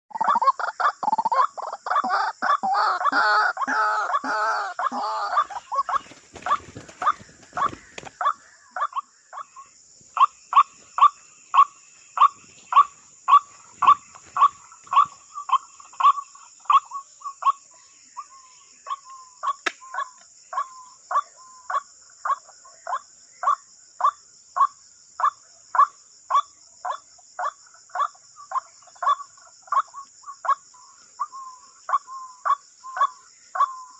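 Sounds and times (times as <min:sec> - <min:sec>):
waterhen calling: 0:00.1 - 0:09.5, 0:10.2 - 0:17.6
insects hissing: 0:00.1 - 0:33.9.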